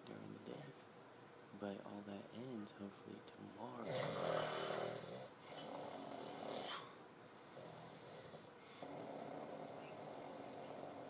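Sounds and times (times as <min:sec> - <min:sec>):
man snoring: 0:03.8 - 0:11.0.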